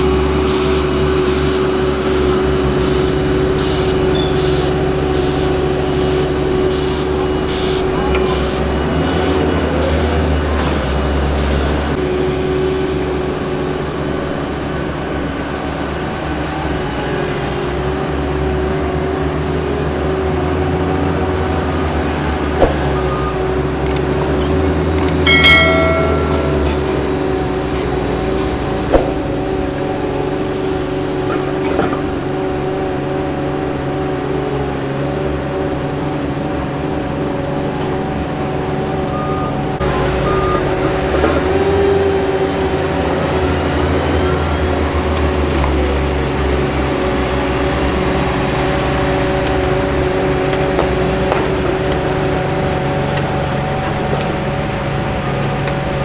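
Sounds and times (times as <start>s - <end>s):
diesel paving machinery engines droning: 0.0s - 56.0s
short high-pitched tone: 25.3s - 27.5s.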